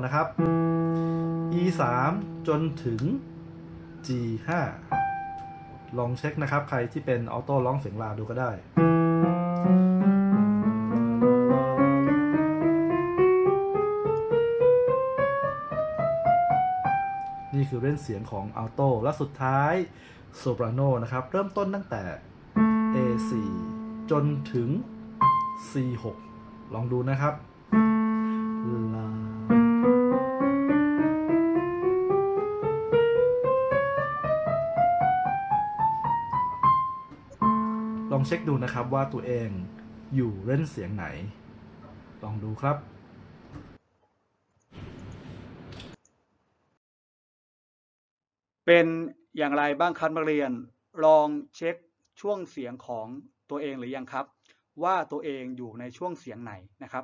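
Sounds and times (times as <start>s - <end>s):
piano ascending scale: 0.0s - 6.5s, 8.7s - 19.3s, 22.5s - 42.6s
held low piano note: 0.3s - 6.5s, 22.6s - 42.6s.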